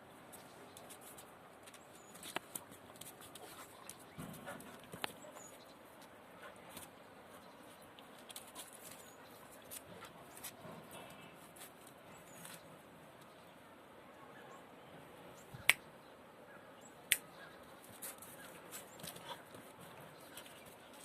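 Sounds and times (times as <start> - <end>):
dogs scuffling: 0.3 - 6.9, 7.6 - 12.7, 17.8 - 21.0.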